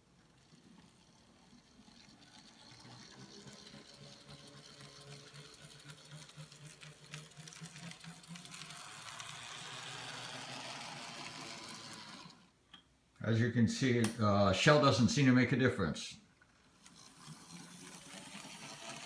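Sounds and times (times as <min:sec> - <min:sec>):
model train motor whirring: 0:00.0 - 0:12.6, 0:16.4 - 0:19.0
model train clicks: 0:00.3 - 0:12.5, 0:16.8 - 0:19.0.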